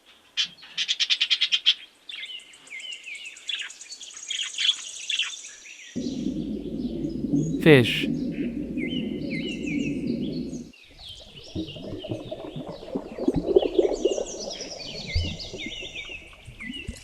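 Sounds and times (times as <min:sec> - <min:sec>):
low rustling: 0:06.0 - 0:14.6.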